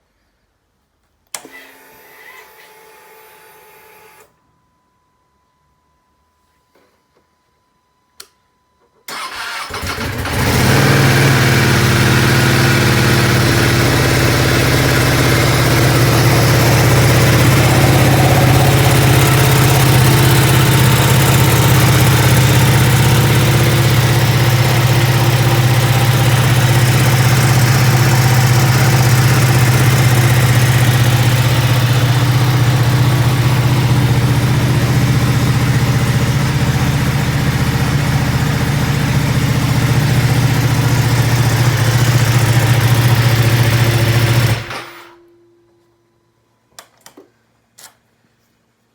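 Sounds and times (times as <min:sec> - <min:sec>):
motorcycle starter cranking: 0:09.1 - 0:11.8
motorcycle engine idling: 0:09.2 - 0:44.6.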